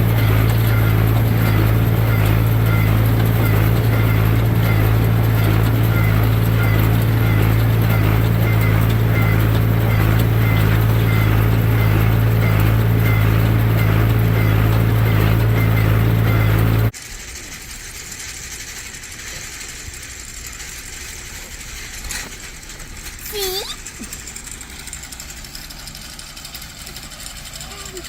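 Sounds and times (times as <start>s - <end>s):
baler repeating higher marks: 0.0s - 16.9s
tractor engine drone: 0.0s - 28.0s.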